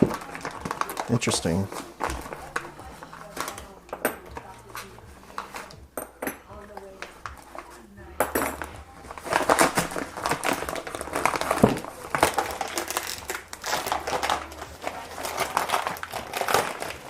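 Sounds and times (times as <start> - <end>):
plastic packaging crinkling: 0.0 - 3.8, 9.0 - 17.0.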